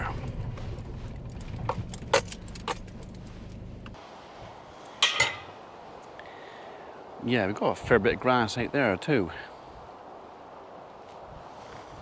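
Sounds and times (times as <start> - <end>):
keys jangling at ignition: 0.0 - 3.8
vehicle engine idling: 0.0 - 4.0.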